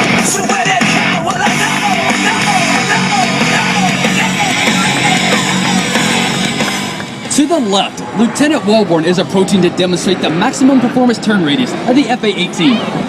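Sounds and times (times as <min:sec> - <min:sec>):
hard rock song: 0:00.0 - 0:07.4.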